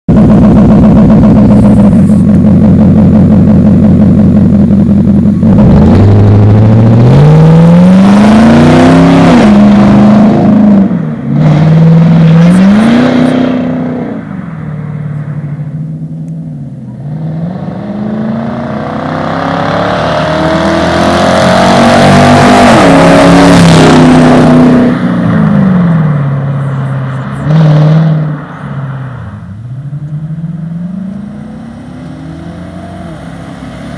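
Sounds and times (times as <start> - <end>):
car engine idling and revving: 0.1 - 33.9.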